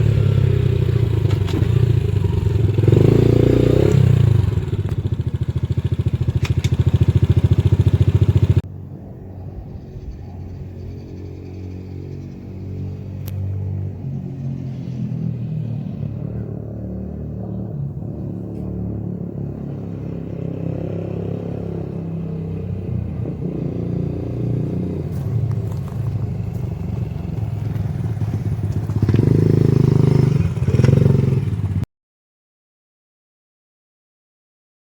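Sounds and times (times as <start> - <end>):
quad bike engine revving: 0.0 - 8.6, 16.3 - 31.8.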